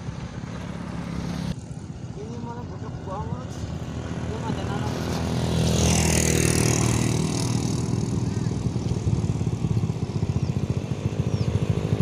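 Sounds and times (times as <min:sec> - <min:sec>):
vehicle engine passing: 0:00.0 - 0:12.0
small engine chugging: 0:05.9 - 0:12.0.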